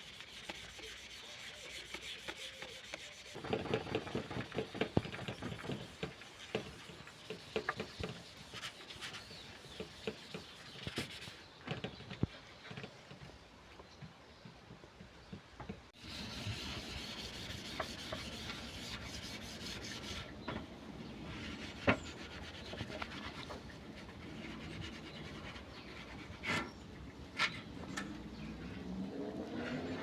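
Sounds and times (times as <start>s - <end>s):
sanding metal panels: 0.0s - 11.4s, 16.0s - 28.0s.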